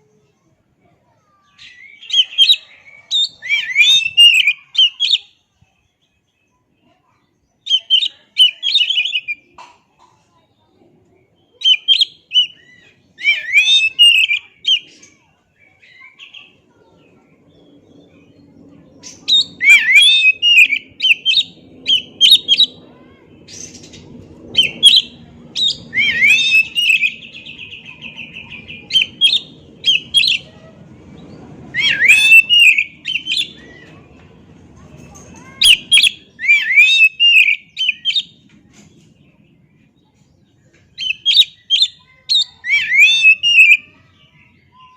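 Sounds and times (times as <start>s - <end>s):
bird singing whistled phrases: 1.5s - 5.4s, 7.6s - 9.4s, 11.6s - 16.6s, 19.0s - 22.8s, 24.6s - 30.4s, 31.7s - 33.7s, 35.6s - 38.4s, 41.0s - 44.0s.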